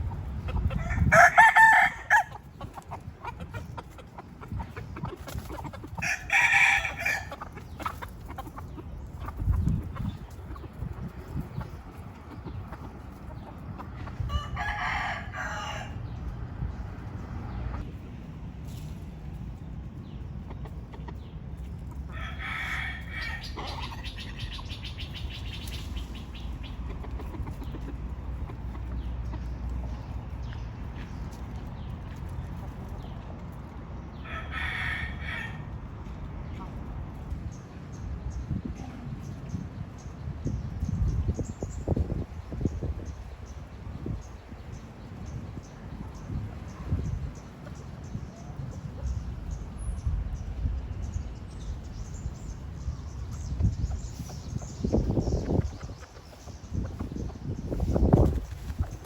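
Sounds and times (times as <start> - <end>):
chicken calling: 0.0 - 11.7, 12.3 - 16.0, 22.1 - 28.9
chicken clucking: 0.0 - 15.8, 19.4 - 33.5, 52.2 - 59.0
rooster crowing: 0.8 - 2.3, 6.0 - 7.3, 14.3 - 16.0, 22.1 - 23.6.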